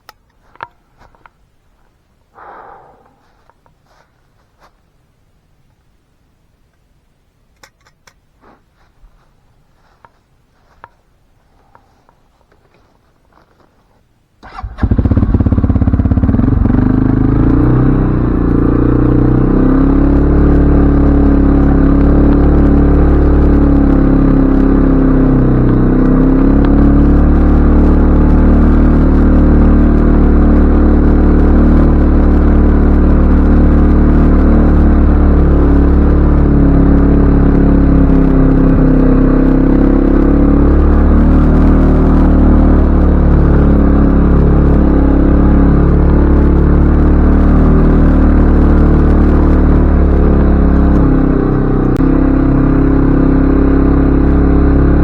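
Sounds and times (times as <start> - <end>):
atv engine running: 14.4 - 55.0.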